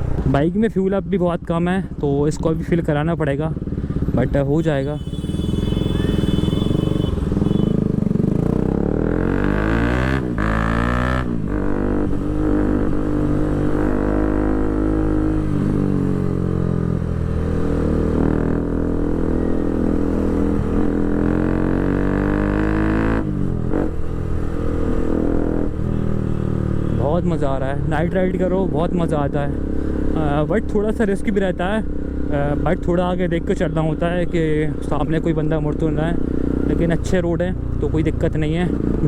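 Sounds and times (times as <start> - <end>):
motorcycle engine accelerating: 7.2 - 27.0.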